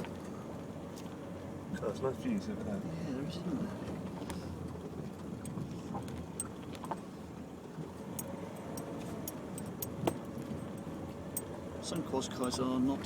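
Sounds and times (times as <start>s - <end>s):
car engine and tyre rumble: 0.0s - 13.0s
interior rattles and clicks: 3.8s - 13.0s.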